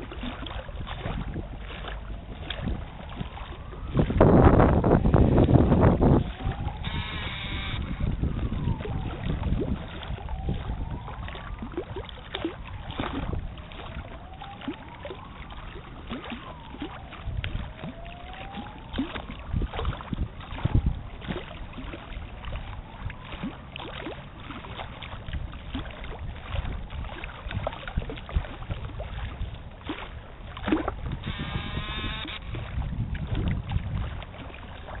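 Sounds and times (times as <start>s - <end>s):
small waves lapping and splashing: 0.0s - 35.0s
wind: 0.0s - 35.0s
faint sliding tone: 31.2s - 32.6s.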